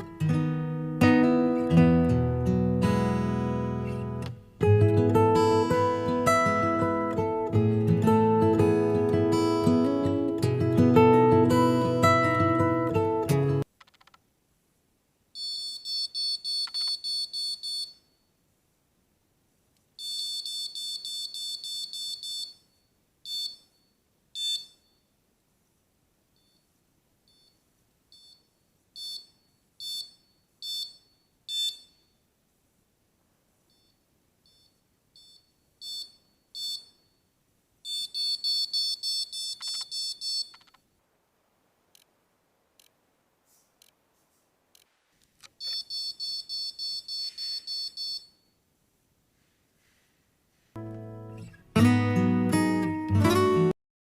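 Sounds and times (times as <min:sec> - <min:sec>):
high-pitched alarm beeps: 0:20.0 - 0:25.0, 0:28.2 - 0:32.2, 0:33.7 - 0:37.2, 0:37.9 - 0:40.7, 0:45.6 - 0:48.5.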